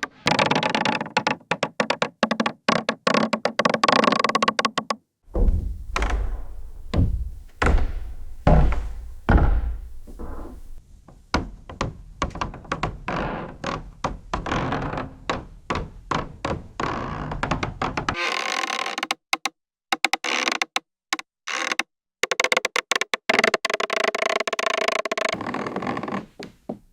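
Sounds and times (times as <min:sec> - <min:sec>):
footsteps on creaky wooden stairs: 0:05.3 - 0:10.8, 0:23.6 - 0:26.8.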